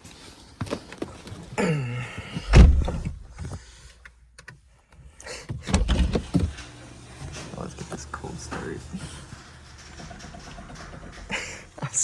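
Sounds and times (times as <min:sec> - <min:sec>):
car door shutting: 0:02.5 - 0:03.4.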